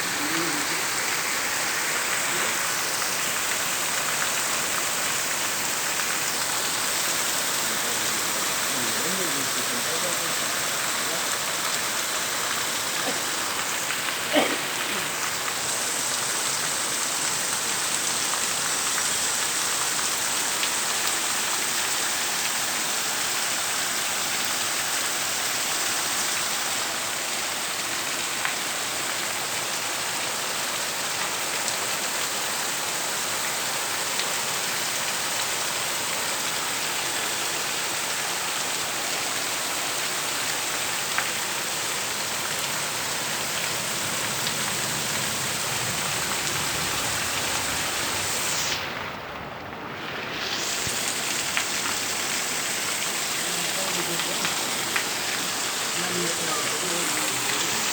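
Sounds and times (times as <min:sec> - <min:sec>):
heavy rain falling: 0:00.0 - 0:57.9.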